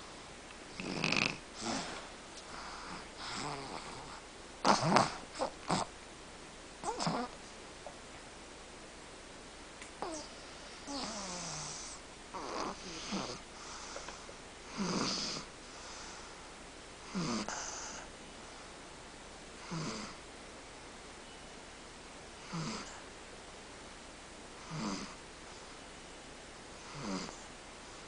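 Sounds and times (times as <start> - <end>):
baby snoring: 0.7 - 2.0, 2.6 - 5.9, 6.8 - 7.4, 10.0 - 15.5, 17.0 - 18.1, 19.6 - 20.2, 22.4 - 23.0, 24.6 - 25.2, 26.8 - 27.5.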